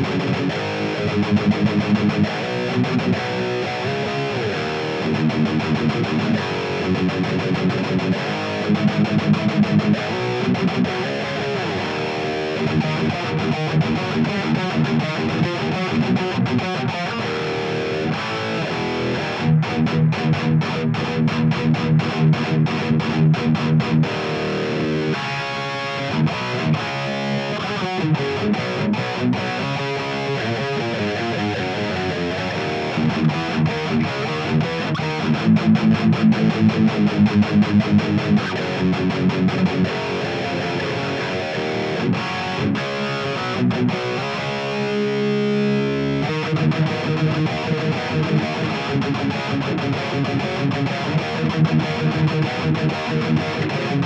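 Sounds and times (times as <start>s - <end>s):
distorted electric guitar riffs: 0.0s - 54.0s
palm-muted guitar chugs: 0.0s - 54.0s.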